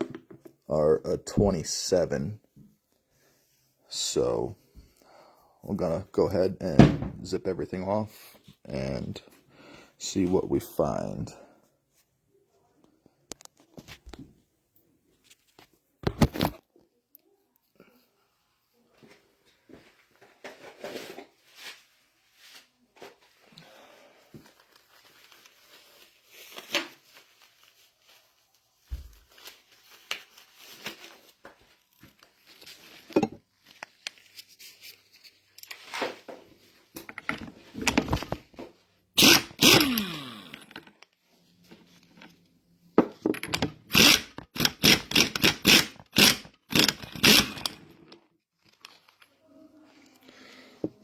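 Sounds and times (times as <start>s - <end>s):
hand tools clicking on metal: 39.2s - 40.9s, 43.4s - 48.2s.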